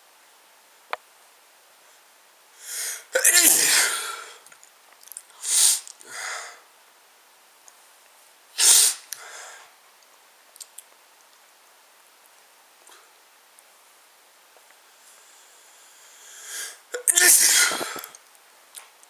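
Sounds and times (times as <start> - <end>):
person sneezing: 2.7 - 4.4, 5.4 - 6.5, 8.6 - 9.1, 16.5 - 18.1.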